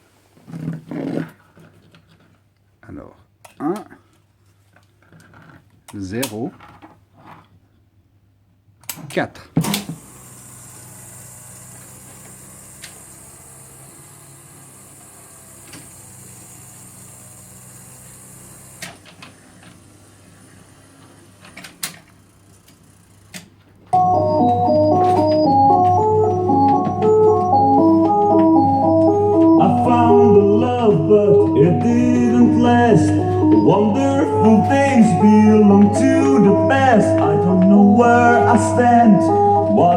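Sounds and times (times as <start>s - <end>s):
jukebox low hum: 24.0s - 39.9s
jukebox record with organ intro: 24.0s - 39.9s.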